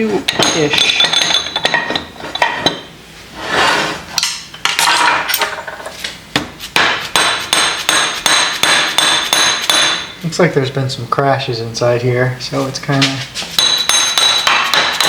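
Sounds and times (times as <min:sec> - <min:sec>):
metal parts knocking and clinking: 0:00.3 - 0:02.8, 0:04.6 - 0:05.8.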